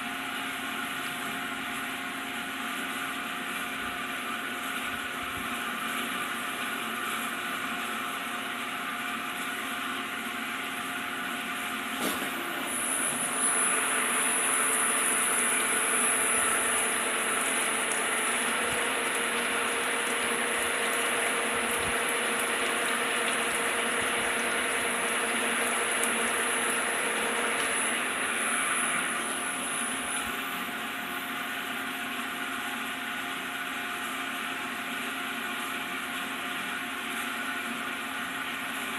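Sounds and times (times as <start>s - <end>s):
low steady machine hum: 0.0s - 38.9s
gear cutting machine running: 3.1s - 33.7s
thin high machine whine: 11.6s - 33.1s.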